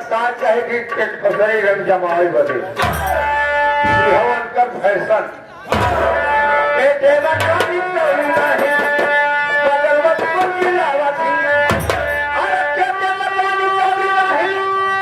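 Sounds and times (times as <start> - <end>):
drum strokes: 0.0 - 4.6, 5.7 - 12.6
deep low thumps: 2.7 - 4.4, 5.7 - 6.6.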